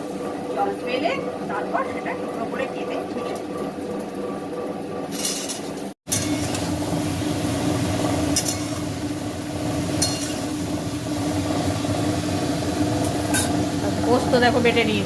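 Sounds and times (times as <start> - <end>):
vegetables frying in a pan: 6.1 - 15.0.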